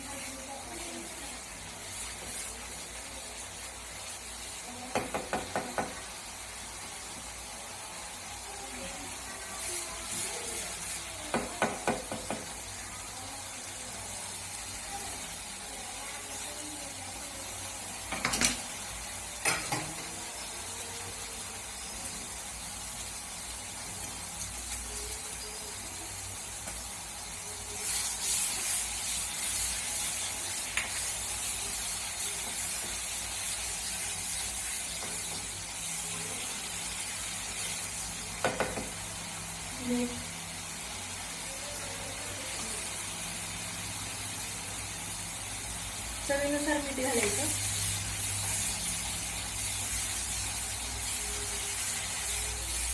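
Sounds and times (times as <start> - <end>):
paste sizzling in oil: 0.0 - 52.9
spoon knocking against pan: 4.9 - 6.0, 11.3 - 12.5, 38.4 - 39.0.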